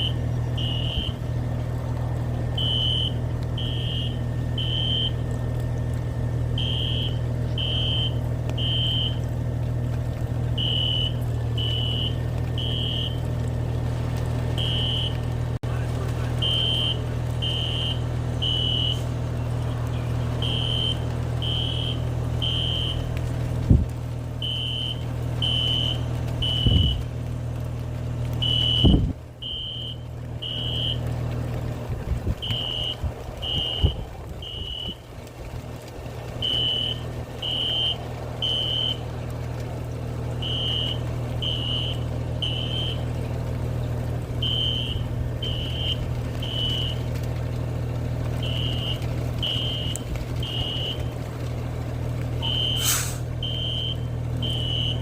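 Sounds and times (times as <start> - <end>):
fire alarm beeping: 0.0 - 1.2, 2.6 - 5.2, 6.6 - 9.2, 10.6 - 13.2, 14.6 - 15.2, 16.4 - 19.0, 20.4 - 23.1, 24.4 - 27.0, 28.4 - 31.0, 32.4 - 35.0, 36.4 - 39.0, 40.4 - 43.0, 44.4 - 47.0, 48.4 - 51.0, 52.4 - 55.0
vehicle engine idling: 0.0 - 55.0.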